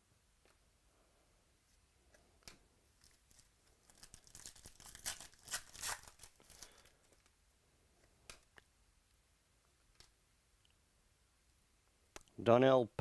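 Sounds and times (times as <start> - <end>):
thin plastic crinkling and tearing: 3.0 - 7.3.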